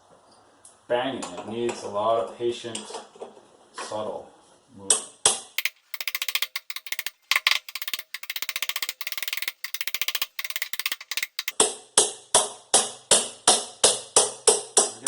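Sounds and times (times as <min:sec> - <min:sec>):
ratchet wrench clicking: 0:05.6 - 0:11.6.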